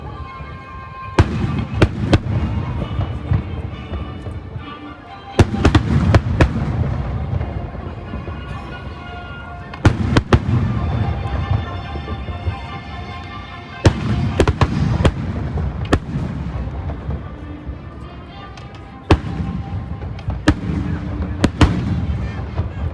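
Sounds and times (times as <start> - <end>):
fireworks bursting with sharp bangs: 0.0 - 22.9
music playing: 0.0 - 22.9.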